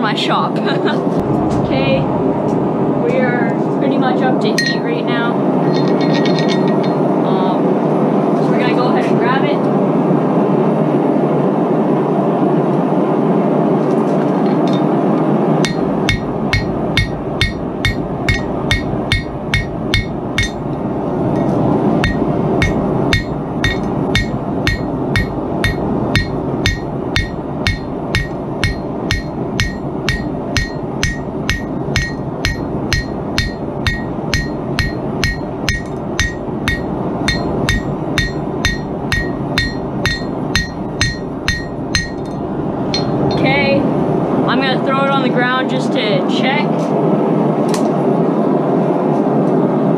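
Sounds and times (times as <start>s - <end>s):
hammer ringing on anvil: 4.6s - 4.9s, 5.7s - 7.0s, 15.6s - 20.8s, 21.4s - 43.5s.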